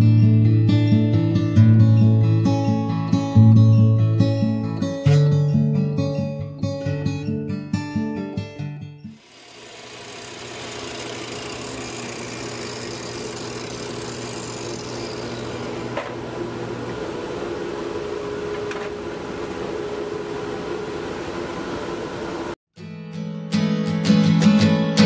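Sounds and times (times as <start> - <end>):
power tool motor running: 9.1 - 20.4.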